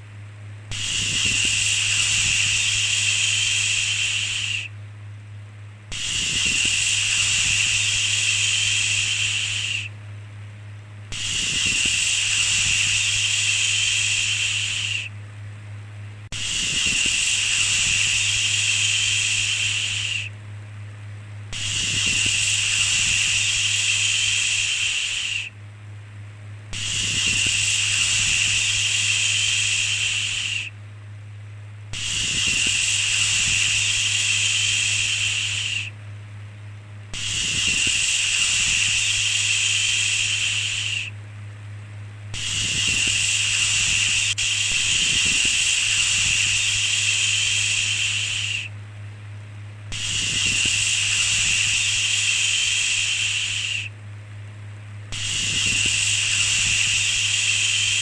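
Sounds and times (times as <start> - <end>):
steady low hum: 0.0 - 58.0
person shushing: 0.7 - 4.7, 5.9 - 9.9, 11.1 - 15.1, 16.4 - 20.3, 37.2 - 41.1, 42.4 - 48.7.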